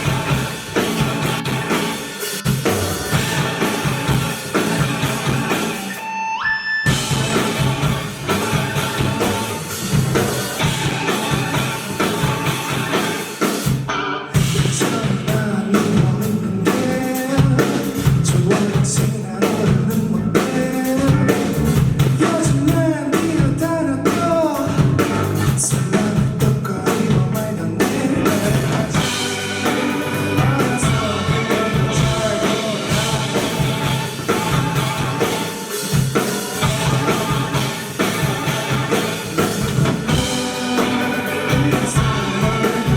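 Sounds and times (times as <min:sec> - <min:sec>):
drum kit: 0:00.0 - 0:42.9
rock band playing: 0:00.0 - 0:42.9
person singing: 0:14.6 - 0:21.6, 0:22.2 - 0:42.9.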